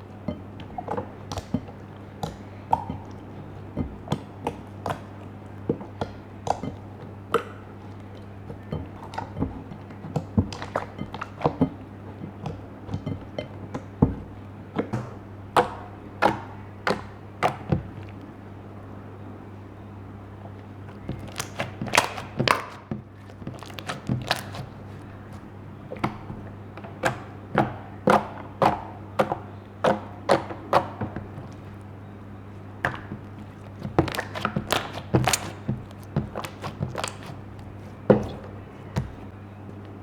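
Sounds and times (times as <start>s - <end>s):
steady low hum: 0.0s - 40.0s
slime clicking and popping: 21.1s - 26.2s, 32.9s - 39.3s.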